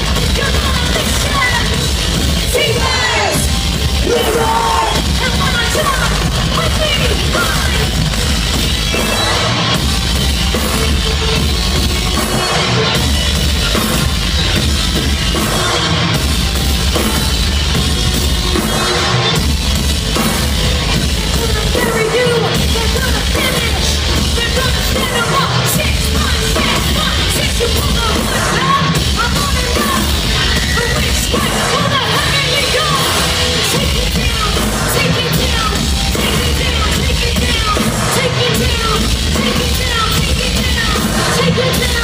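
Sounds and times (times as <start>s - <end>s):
singer yelling vocals: 0.0s - 8.1s, 21.2s - 42.0s
live rock band playing: 0.0s - 42.0s.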